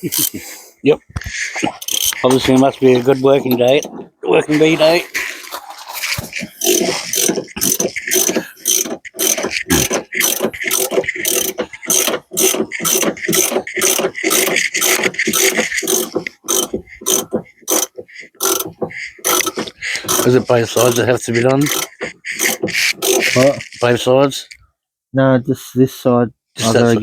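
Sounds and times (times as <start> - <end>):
ratchet wrench clicking: 1.8 - 2.5, 6.6 - 23.8.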